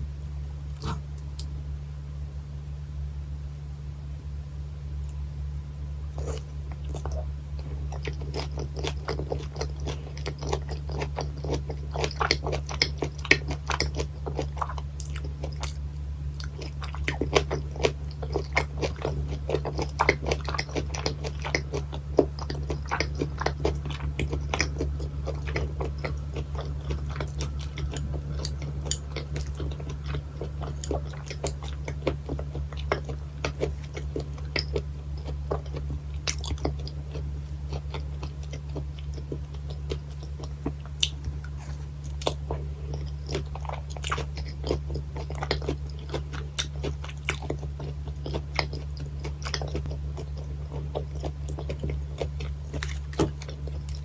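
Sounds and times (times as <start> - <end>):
steady low hum: 0.0 - 54.0
wet mouth clicks: 0.8 - 1.5
chewing crunchy fish with bones: 6.1 - 54.0.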